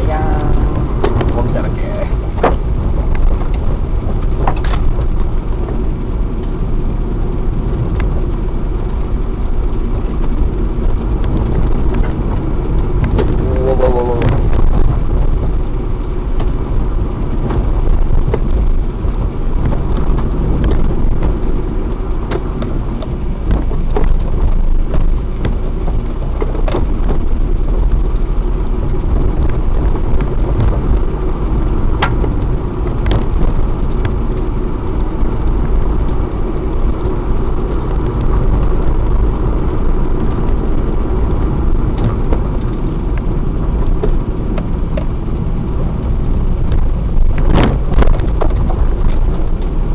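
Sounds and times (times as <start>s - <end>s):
vehicle engine and road noise: 0.0s - 49.9s
sharp clicks and snaps: 9.9s - 13.4s, 17.4s - 45.1s.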